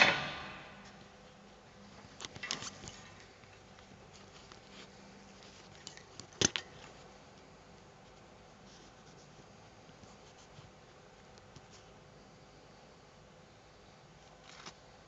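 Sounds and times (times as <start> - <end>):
sharp knock: 0.0 - 0.8.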